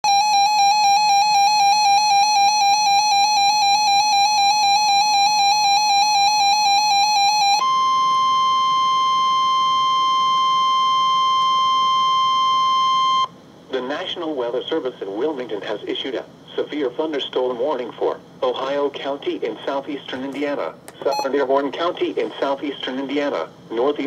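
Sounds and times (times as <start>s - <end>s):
continuous alert tone: 20.9s - 21.5s
harsh pulsing electronic beep: 21.0s - 21.4s.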